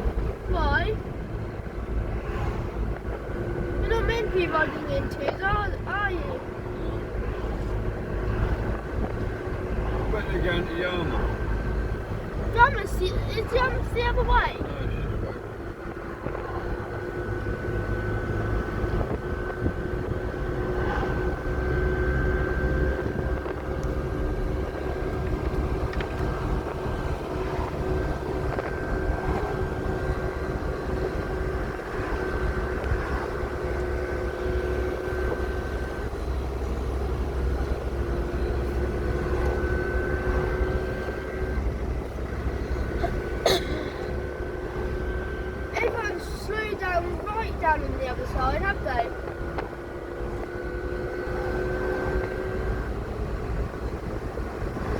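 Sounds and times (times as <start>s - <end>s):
vehicle engine rumble: 0.0s - 54.9s
whining tones: 0.0s - 54.9s.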